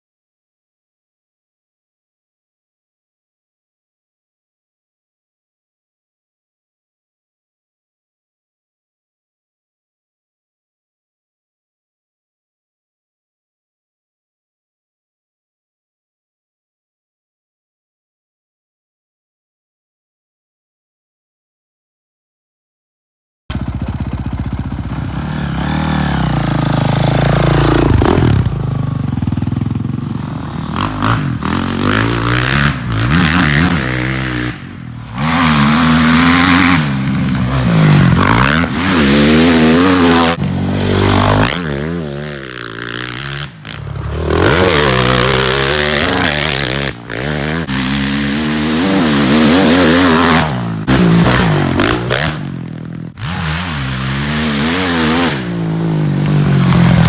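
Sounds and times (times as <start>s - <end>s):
engine revving: 23.5s - 57.0s.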